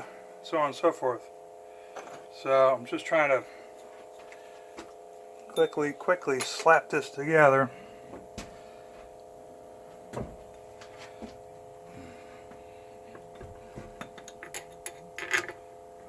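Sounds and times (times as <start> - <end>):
steady hum: 0.0 - 16.0
metal engine parts clicking: 14.0 - 15.6.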